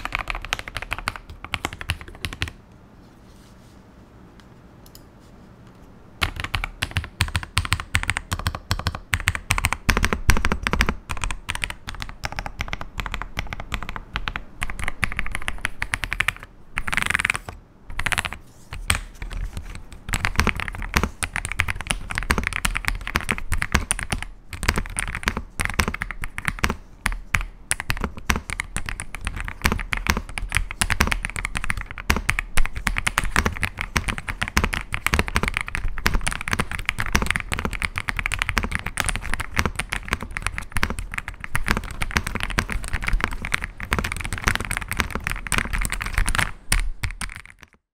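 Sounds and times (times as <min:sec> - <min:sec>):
mechanical keyboard typing: 0:00.0 - 0:02.6, 0:06.2 - 0:47.8.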